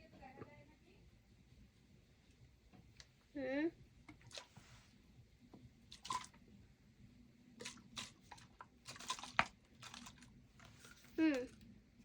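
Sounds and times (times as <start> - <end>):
small container clicks: 7.6 - 11.6.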